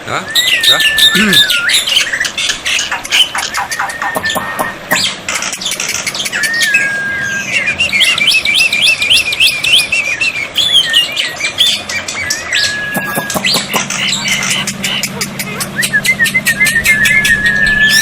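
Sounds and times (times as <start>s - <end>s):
starling whistles: 0.2s - 18.0s
starling chirps: 0.3s - 18.0s
starling clicking chatter: 0.6s - 6.5s, 11.2s - 18.0s.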